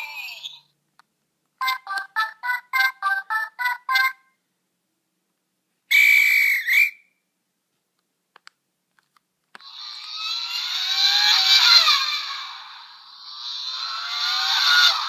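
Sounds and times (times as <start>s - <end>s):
whistle-like electronic tone: 5.9s - 7.1s.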